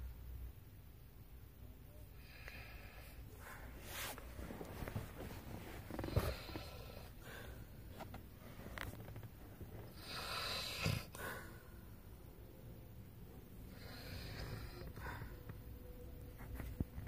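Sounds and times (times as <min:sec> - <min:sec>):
woman snoring: 0:09.9 - 0:11.3, 0:13.7 - 0:15.2.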